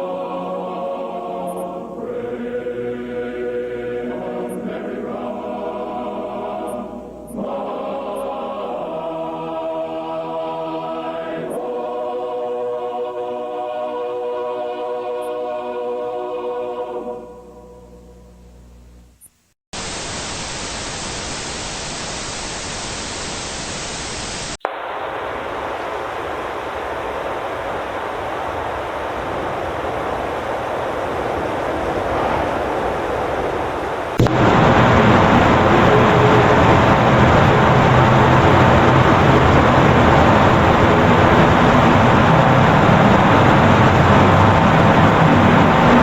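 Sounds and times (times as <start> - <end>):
hissing static: 17.6 - 31.7, 33.2 - 46.0
low rumble: 34.2 - 46.0.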